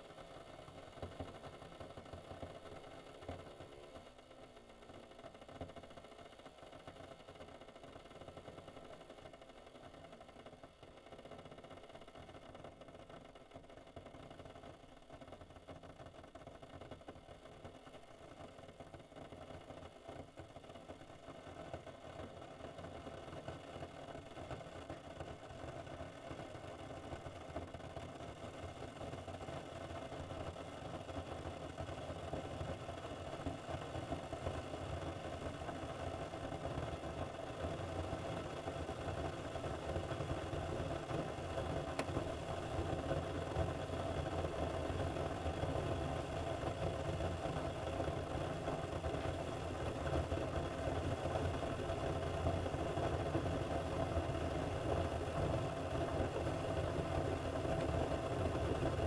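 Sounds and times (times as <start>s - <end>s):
coffee maker pump droning: 0.0s - 59.0s.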